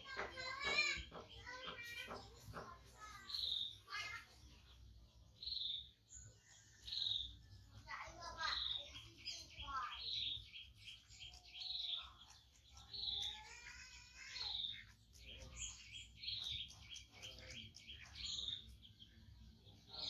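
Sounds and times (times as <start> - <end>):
bird call with rattling trill: 0.0 - 4.6, 5.4 - 19.2.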